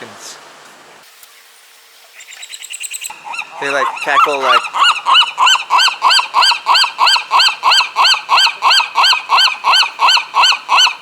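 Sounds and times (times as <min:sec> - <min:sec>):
seagull calling: 0:02.2 - 0:11.0.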